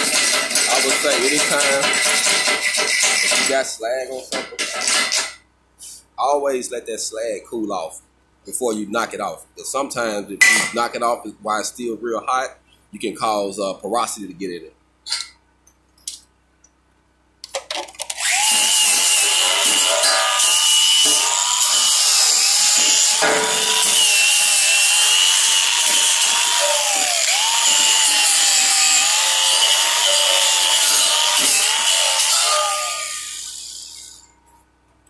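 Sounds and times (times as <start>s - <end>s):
angle grinder on steel: 0.0s - 3.6s, 18.2s - 34.3s.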